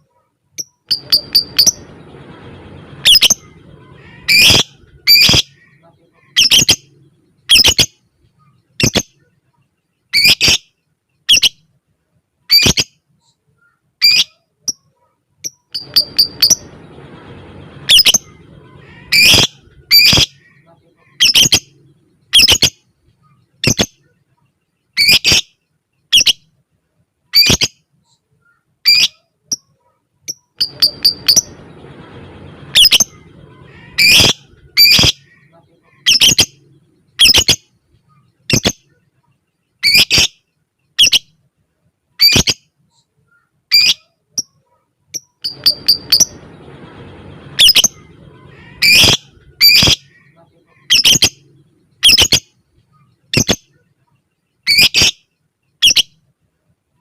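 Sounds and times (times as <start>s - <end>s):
bird high-pitched calls: 0.6s - 9.2s, 15.5s - 24.0s, 30.3s - 38.9s, 45.2s - 53.8s, 54.6s - 55.2s.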